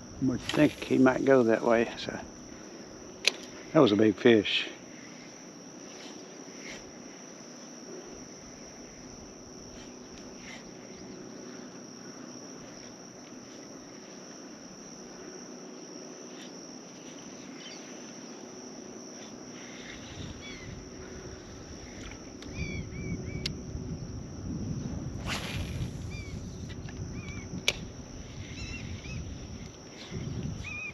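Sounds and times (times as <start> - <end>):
high-pitched insect drone: 0.0 - 30.9
wind noise on microphone: 19.9 - 30.9
faint clicks and chirps: 22.4 - 22.6.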